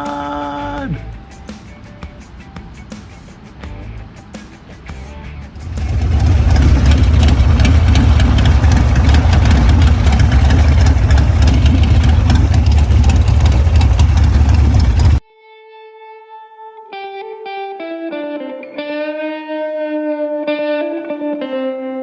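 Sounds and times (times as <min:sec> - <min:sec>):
motorcycle engine running: 0:05.5 - 0:15.2.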